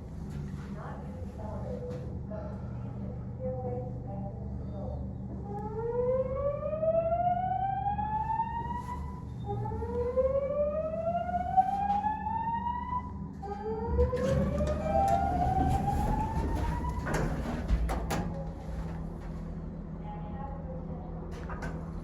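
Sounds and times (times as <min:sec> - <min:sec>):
low hum: 0:00.0 - 0:22.0
slow-whoop alarm tone: 0:05.5 - 0:17.3.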